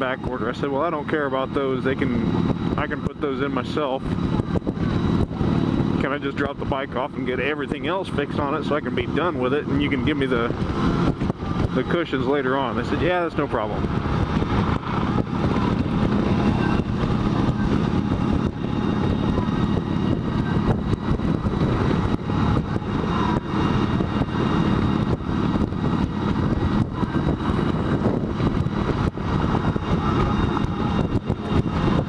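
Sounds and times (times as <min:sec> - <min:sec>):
motorcycle engine rumble: 0:00.0 - 0:32.0
wind noise: 0:00.0 - 0:32.0.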